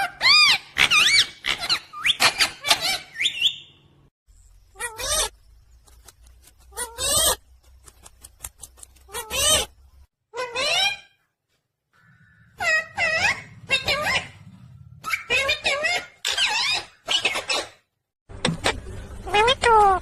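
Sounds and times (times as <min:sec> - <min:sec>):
parrot chirping and squawking: 0:00.0 - 0:03.7, 0:04.8 - 0:05.3, 0:06.7 - 0:07.4, 0:09.1 - 0:09.7, 0:10.3 - 0:11.2, 0:12.0 - 0:17.9.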